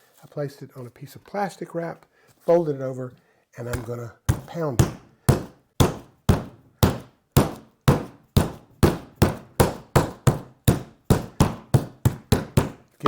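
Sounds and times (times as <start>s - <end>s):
meat being pounded on board: 3.7s - 12.8s.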